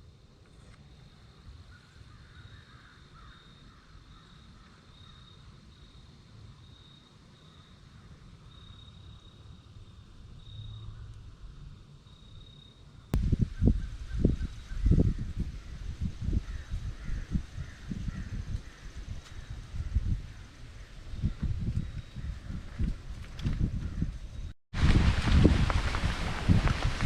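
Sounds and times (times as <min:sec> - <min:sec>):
wind rumbling on microphone: 0:13.2 - 0:27.0.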